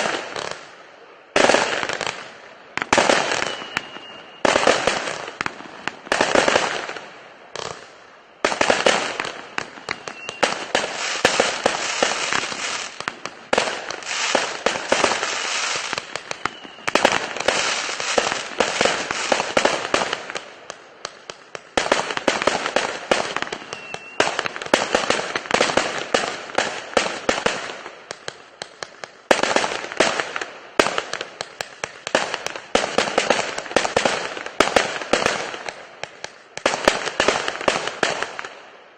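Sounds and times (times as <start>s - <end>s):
firework cake firing rapid cracks: 8.5s - 38.5s.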